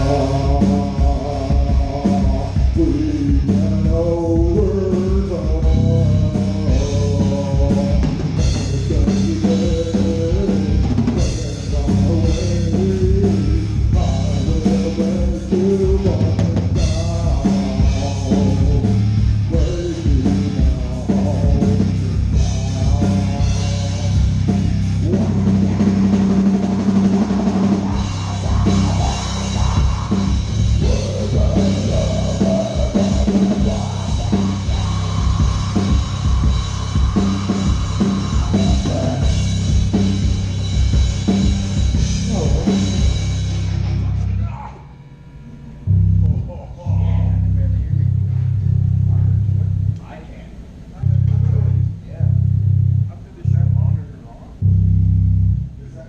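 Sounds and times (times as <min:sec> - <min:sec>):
drum kit: 0:00.0 - 0:44.7
rock band playing: 0:00.0 - 0:46.3.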